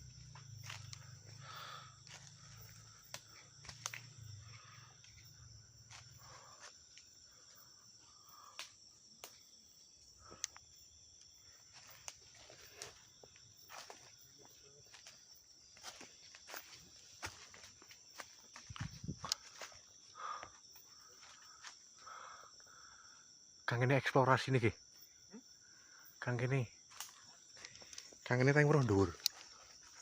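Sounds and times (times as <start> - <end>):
night insects chirring: 0.0 - 30.0
footsteps rustling in undergrowth: 15.8 - 19.8.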